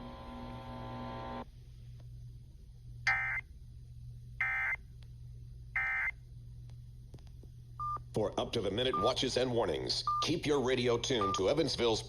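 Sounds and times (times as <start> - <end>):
steady buzzing tone: 0.0 - 1.4
low steady hum: 0.0 - 12.0.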